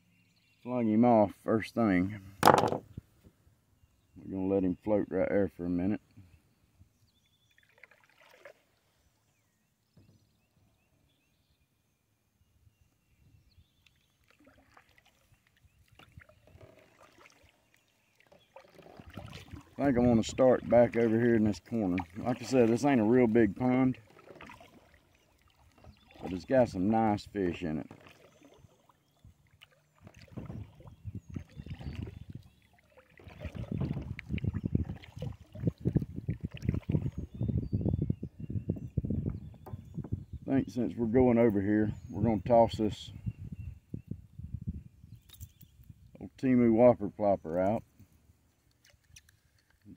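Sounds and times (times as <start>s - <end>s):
knocks on kayak hull: 2.4s - 2.9s
paddle dips and splashes: 7.4s - 9.4s, 13.8s - 37.4s, 48.6s - 49.9s.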